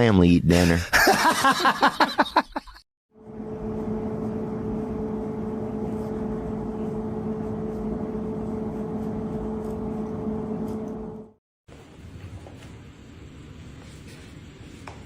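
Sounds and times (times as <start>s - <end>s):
machine hum: 3.1s - 11.4s.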